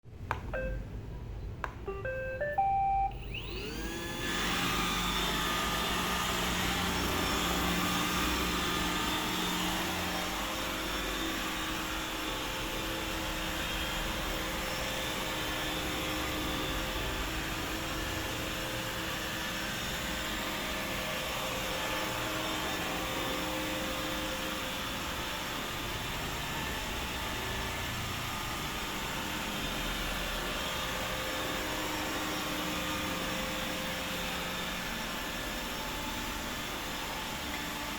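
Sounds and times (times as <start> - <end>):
electronic beeps: 0.4 - 0.9, 1.8 - 3.7
robot vacuum motor whirring: 3.1 - 12.2.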